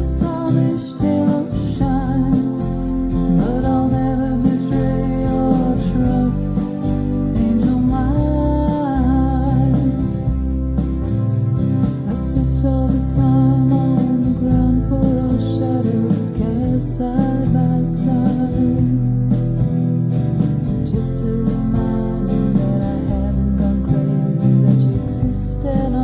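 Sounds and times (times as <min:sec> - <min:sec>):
song with singing and guitar: 0:00.0 - 0:26.0.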